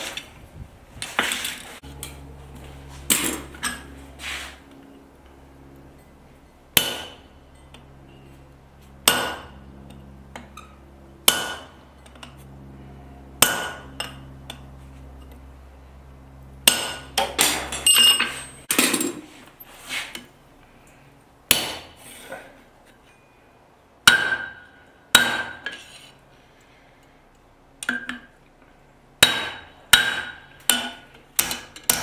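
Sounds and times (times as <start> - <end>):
steady low hum: 0.0 - 31.3
hammer striking metal punch: 6.7 - 7.3, 9.0 - 9.6, 11.2 - 11.8, 13.4 - 14.2, 16.6 - 19.1, 21.5 - 22.0, 24.0 - 25.8, 29.2 - 32.0.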